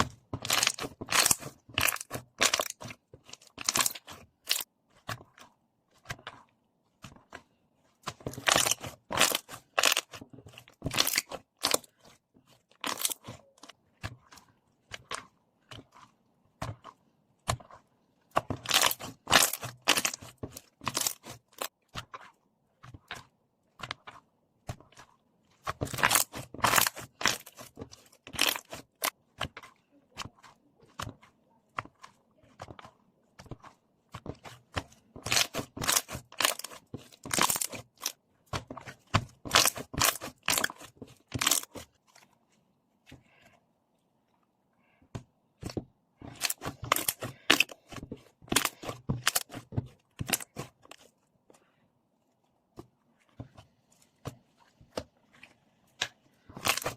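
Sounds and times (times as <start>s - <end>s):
slime crackling and popping: 0.4s - 4.7s, 8.1s - 12.1s, 12.8s - 13.6s, 18.4s - 21.7s, 25.6s - 29.1s, 35.2s - 38.2s, 38.9s - 41.8s, 46.3s - 50.8s, 56.5s - 56.9s.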